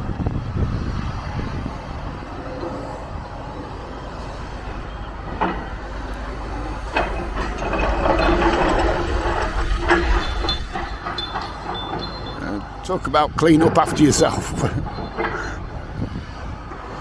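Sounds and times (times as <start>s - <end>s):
wind rumble on microphone: 0.0s - 17.0s
machinery crunching through rubble: 5.4s - 15.3s.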